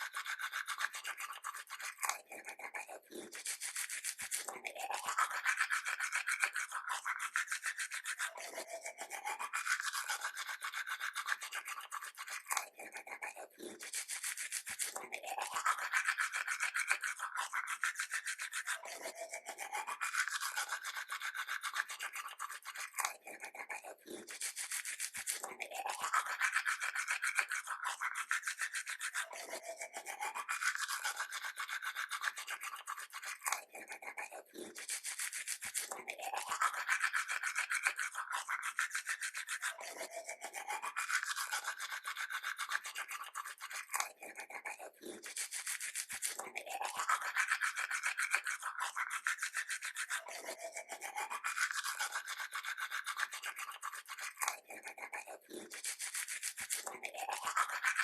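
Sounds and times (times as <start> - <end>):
toothbrush scrubbing teeth: 0.0 - 58.0.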